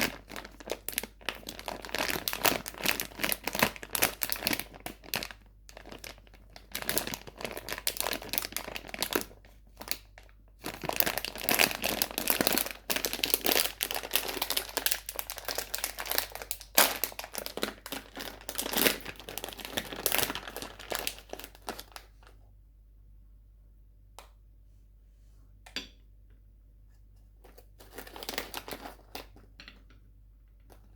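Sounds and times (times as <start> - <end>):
sweet wrappers crinkling: 0.0 - 22.4, 27.4 - 29.5.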